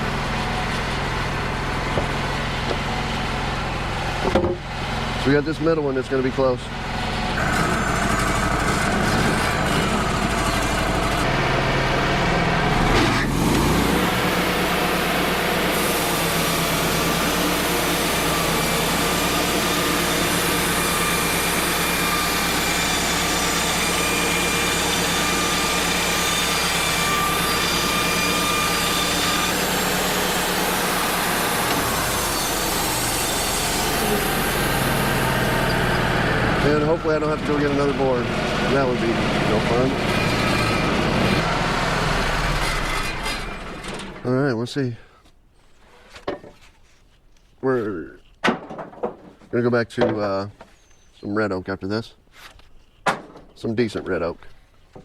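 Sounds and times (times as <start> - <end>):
bandsaw blade cutting wood: 7.3 - 11.4, 12.6 - 44.3.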